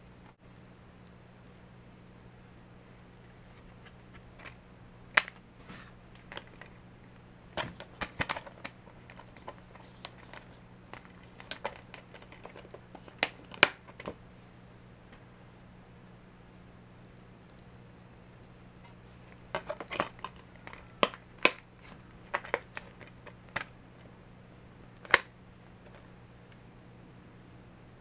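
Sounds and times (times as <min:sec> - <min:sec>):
faint steady hum: 0:00.0 - 0:28.0
plastic cases clicking and tapping: 0:06.2 - 0:06.8, 0:07.6 - 0:14.2, 0:19.4 - 0:23.7, 0:25.0 - 0:26.0.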